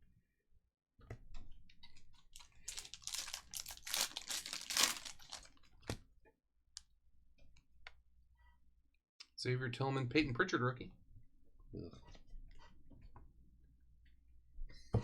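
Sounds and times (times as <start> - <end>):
foil wrapper tearing and crinkling: 2.4 - 5.6.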